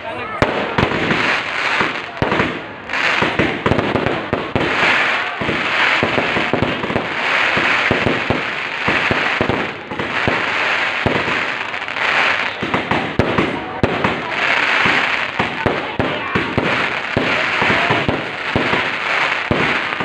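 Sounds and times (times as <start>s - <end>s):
fireworks bangs: 0.3s - 20.0s
crackling hiss: 0.7s - 20.0s.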